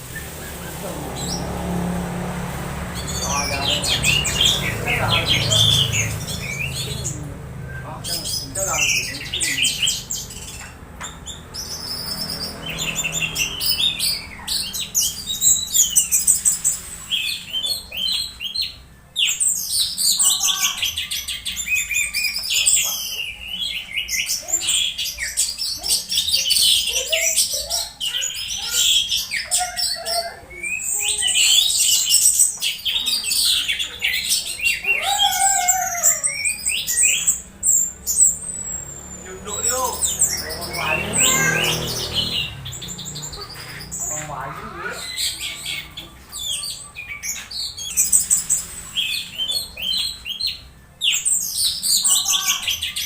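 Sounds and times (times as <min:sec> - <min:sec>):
thrush singing: 0:00.0 - 0:16.0, 0:33.3 - 0:48.0.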